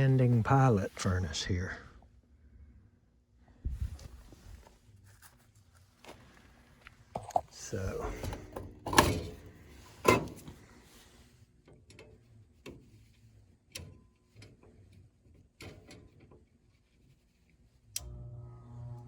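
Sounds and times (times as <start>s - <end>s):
furnace blower motor humming: 7.6s - 10.0s, 18.0s - 19.0s.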